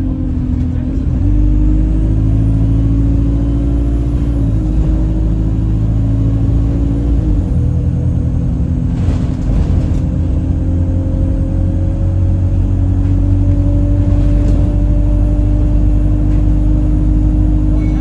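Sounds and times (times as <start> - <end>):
bus drivetrain rumble: 0.0 - 18.0
horn-like droning tone: 17.7 - 18.0.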